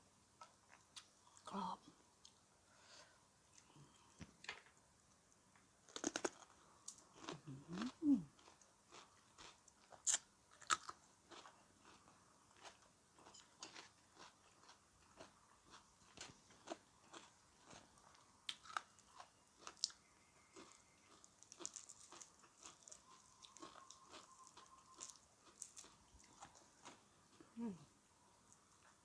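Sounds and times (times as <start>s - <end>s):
person chewing crunchy food: 5.8s - 27.6s.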